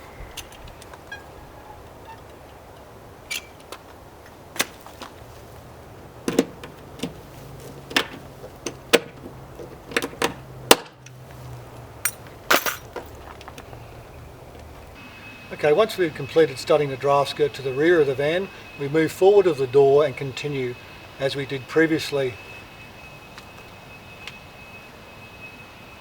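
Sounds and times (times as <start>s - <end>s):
hand tools clicking and knocking: 6.3s - 11.2s.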